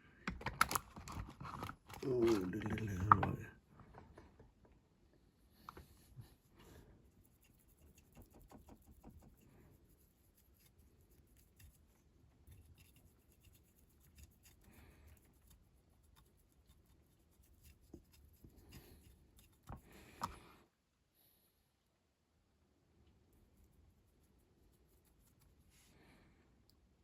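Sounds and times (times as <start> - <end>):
paintbrush scratchy strokes: 5.8 - 20.2, 23.3 - 26.0.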